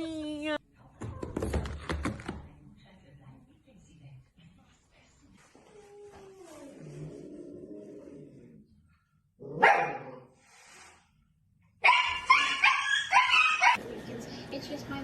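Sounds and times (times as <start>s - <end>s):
dog barking: 9.6s - 10.3s, 11.8s - 13.8s.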